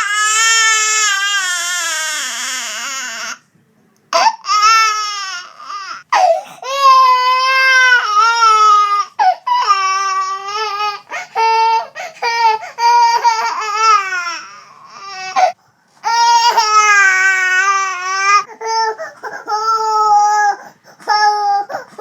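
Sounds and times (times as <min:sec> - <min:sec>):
baby crying: 0:00.0 - 0:03.4, 0:04.2 - 0:22.0
baby gasping breaths: 0:11.1 - 0:12.8, 0:18.5 - 0:19.5.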